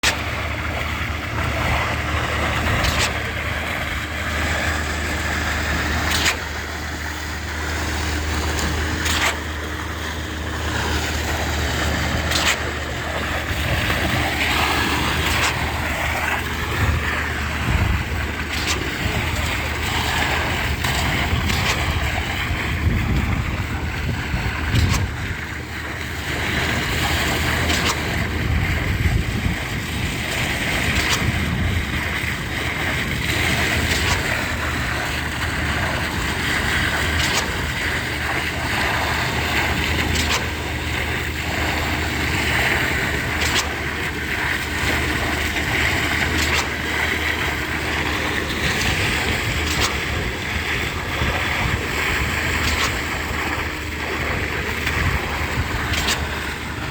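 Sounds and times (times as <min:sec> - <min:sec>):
concrete pump running: 0:00.0 - 0:56.9
wind on microphone: 0:11.8 - 0:25.5, 0:28.0 - 0:39.7.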